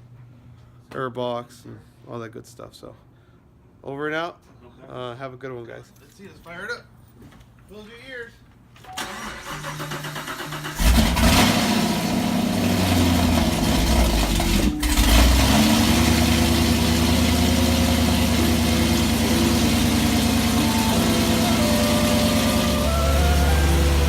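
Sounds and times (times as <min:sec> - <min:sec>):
car engine idling: 0:10.1 - 0:24.0.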